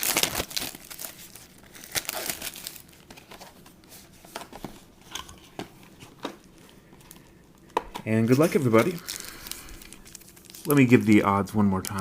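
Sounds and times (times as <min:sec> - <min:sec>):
wrapper crinkling and tearing: 0:00.0 - 0:03.6, 0:08.2 - 0:12.0.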